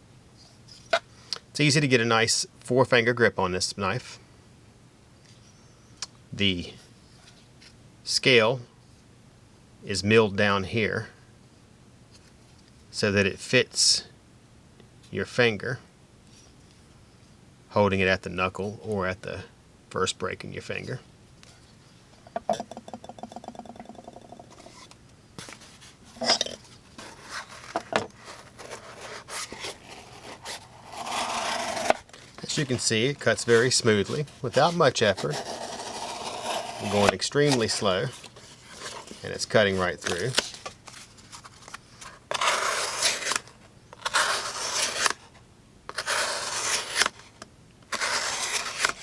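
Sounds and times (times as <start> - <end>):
objects knocking on tabletop: 22.3 - 24.5.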